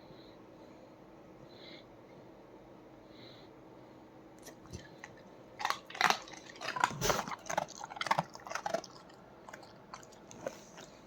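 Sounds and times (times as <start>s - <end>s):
dog crunching a snack: 4.4s - 11.0s.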